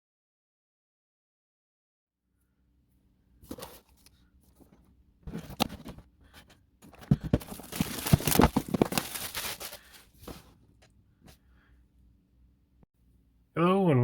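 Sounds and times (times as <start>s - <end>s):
packaging crinkling and rustling: 5.3s - 10.5s.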